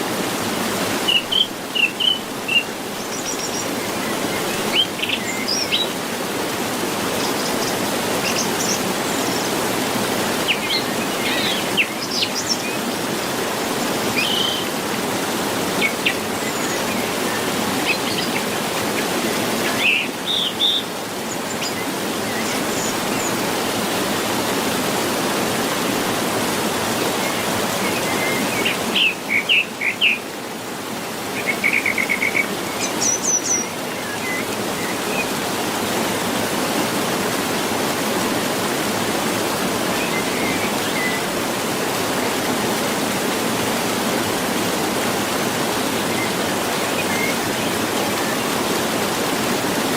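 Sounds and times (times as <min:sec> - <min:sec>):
waterfall rushing: 0:00.0 - 0:49.9
birds chirping: 0:00.9 - 0:06.0, 0:10.3 - 0:14.8, 0:15.7 - 0:23.4.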